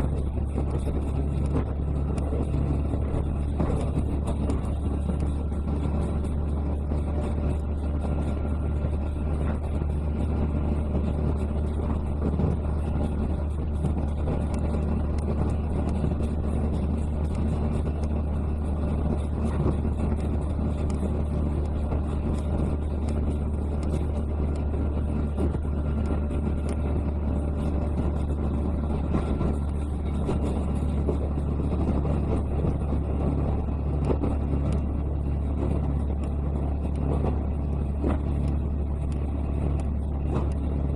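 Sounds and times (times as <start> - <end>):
railcar engine drone: 0.0 - 40.9.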